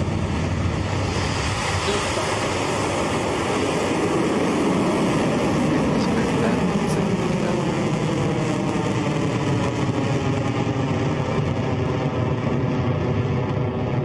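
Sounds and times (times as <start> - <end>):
rocket engines rumbling: 0.0 - 14.0.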